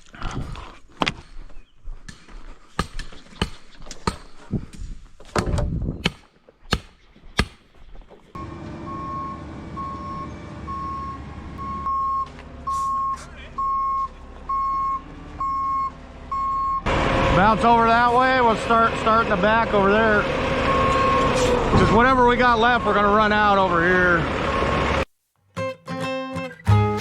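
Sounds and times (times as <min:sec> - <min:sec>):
reversing alarm beeping: 0:08.4 - 0:16.9, 0:20.6 - 0:24.8
diesel truck engine running: 0:08.4 - 0:25.1.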